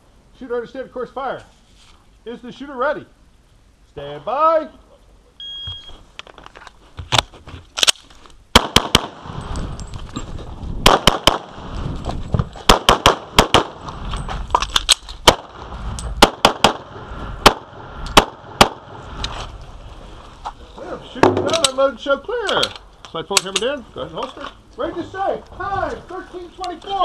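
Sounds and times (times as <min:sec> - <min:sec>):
pistol shots: 0:08.5 - 0:09.3, 0:10.8 - 0:11.6, 0:12.7 - 0:13.8, 0:14.8 - 0:19.0.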